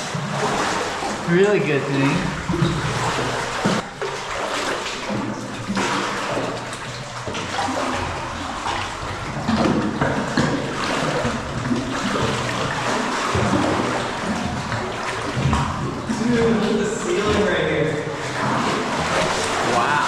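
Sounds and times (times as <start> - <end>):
water splashing from wading: 0.0 - 20.0.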